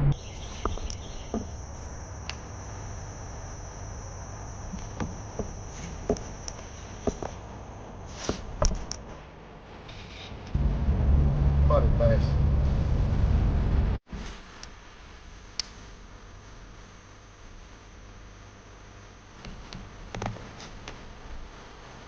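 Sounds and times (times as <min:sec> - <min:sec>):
insects chirring: 0:00.1 - 0:09.0.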